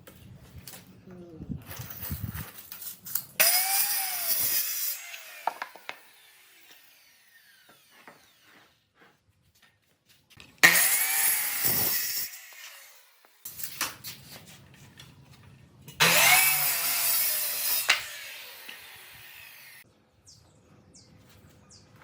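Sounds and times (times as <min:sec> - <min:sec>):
power tool cutting wood: 0:03.4 - 0:08.8, 0:10.6 - 0:13.5, 0:16.0 - 0:19.8.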